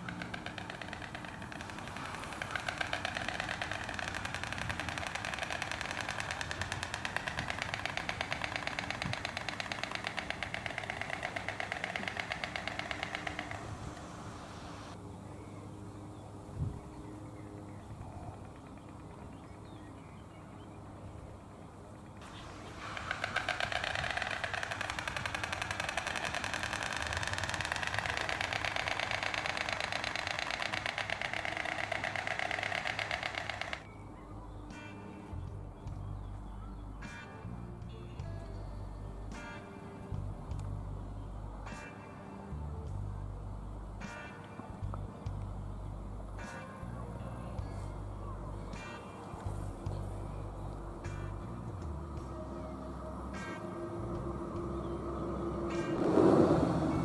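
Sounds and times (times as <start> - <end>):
storks clattering bills: 0.0 - 14.9, 22.2 - 33.9.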